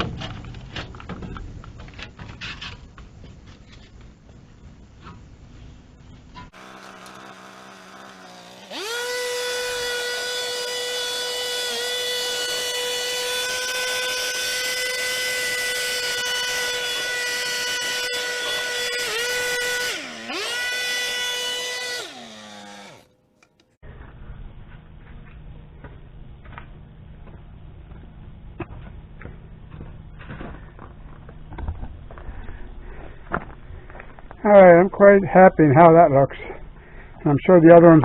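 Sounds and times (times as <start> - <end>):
leaf blower whining: 6.5 - 23.1.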